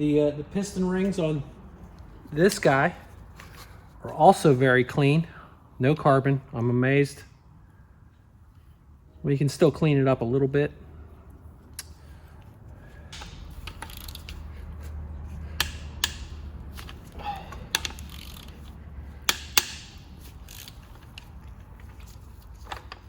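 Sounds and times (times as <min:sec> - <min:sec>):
metallic clicks and clinks: 0:13.2 - 0:14.6.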